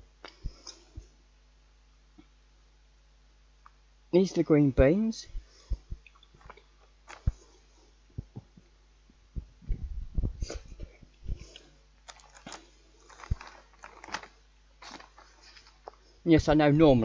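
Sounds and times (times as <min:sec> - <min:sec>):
plastic rustling: 0:05.6 - 0:07.5, 0:11.3 - 0:16.2.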